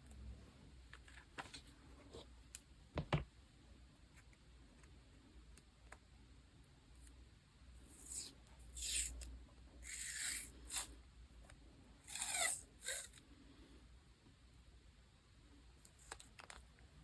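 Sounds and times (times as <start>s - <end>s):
scratchy paper rasps: 7.8s - 9.2s, 9.8s - 10.9s, 12.0s - 13.2s.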